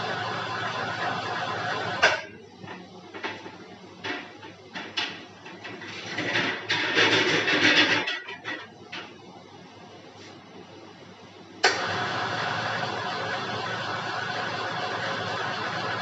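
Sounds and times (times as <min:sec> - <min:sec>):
knocks and clatter: 0:02.0 - 0:09.2.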